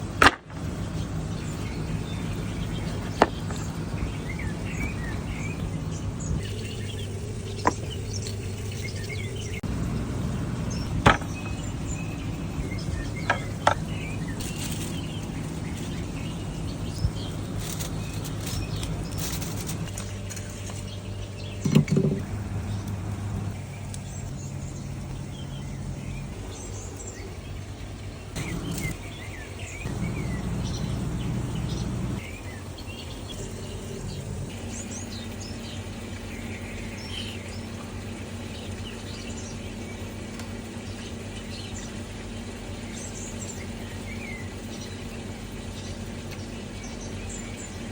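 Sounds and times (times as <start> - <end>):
birds chirping: 0.0 - 47.9
steady low hum: 0.0 - 47.9
sharp knocks: 11.0 - 11.6.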